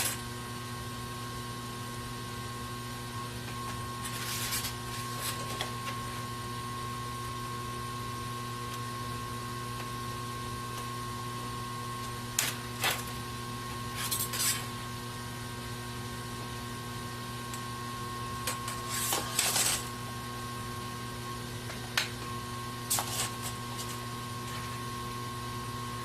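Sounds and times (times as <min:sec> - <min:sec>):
electrical hum: 0:00.0 - 0:26.0
small objects clicking and scraping: 0:18.5 - 0:19.9.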